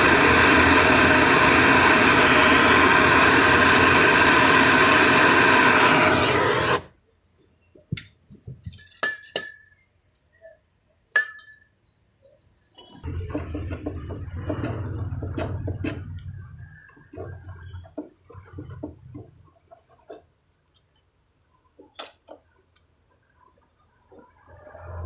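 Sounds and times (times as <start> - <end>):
machine humming loudly: 0.0 - 6.9.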